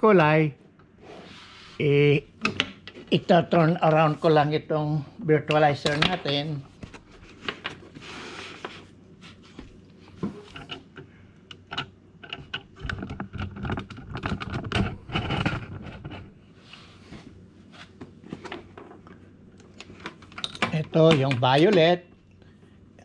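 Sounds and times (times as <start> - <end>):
small clicks and knocks: 10.2 - 16.2.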